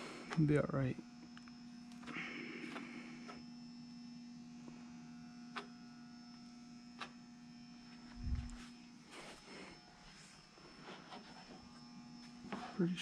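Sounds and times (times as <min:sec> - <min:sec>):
faint electrical hum: 0:00.0 - 0:13.0.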